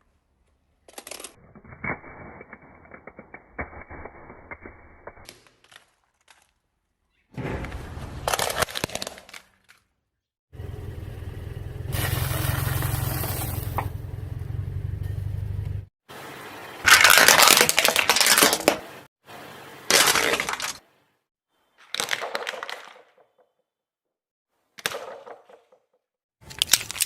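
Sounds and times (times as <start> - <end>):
low engine hum: 10.6 - 15.9
car tyre crushing crunchy objects: 11.9 - 14.3, 16.9 - 18.9.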